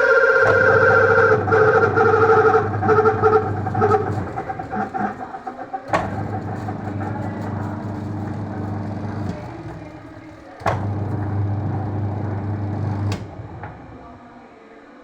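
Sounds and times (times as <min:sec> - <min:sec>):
washing machine motor whine: 0:00.0 - 0:14.5
low mains hum: 0:00.0 - 0:15.0.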